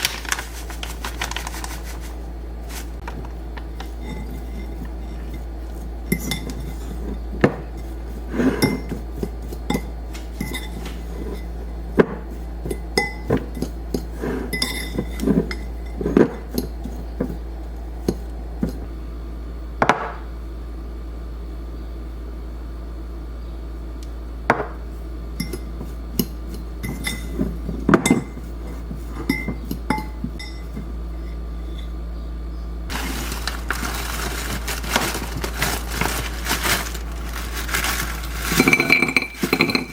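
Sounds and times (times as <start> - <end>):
scraping or rustling: 0.0 - 12.8, 32.9 - 39.9
steady low hum: 0.0 - 39.9
utensils and glass dishes clinking: 6.1 - 7.1, 7.8 - 17.0, 25.4 - 32.0, 32.9 - 39.9.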